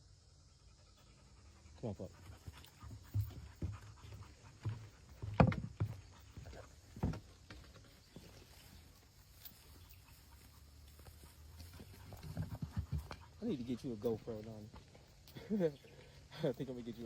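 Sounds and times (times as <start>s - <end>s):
dog panting: 0.6s - 7.6s, 8.3s - 17.0s.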